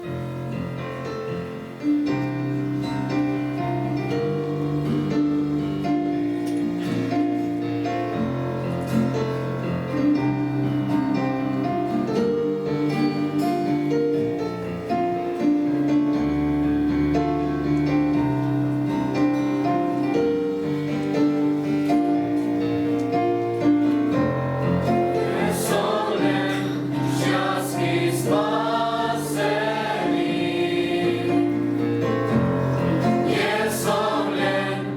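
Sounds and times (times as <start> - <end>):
keyboard playing slow chords: 0.0 - 34.7
youth choir singing: 24.8 - 34.9.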